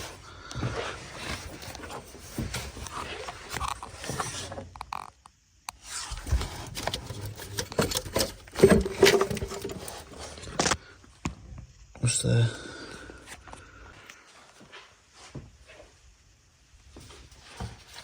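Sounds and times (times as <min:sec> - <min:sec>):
creaking scrape: 0:05.8 - 0:10.8.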